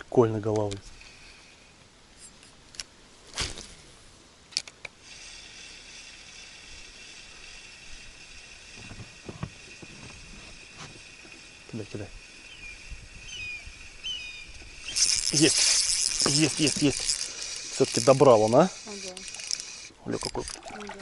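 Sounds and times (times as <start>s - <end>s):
fishing reel whirring: 5.0s - 21.0s.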